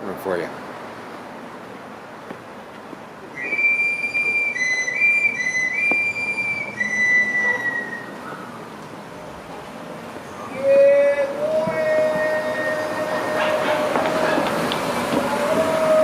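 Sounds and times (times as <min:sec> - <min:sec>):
panpipe whistle notes: 0:03.3 - 0:08.5.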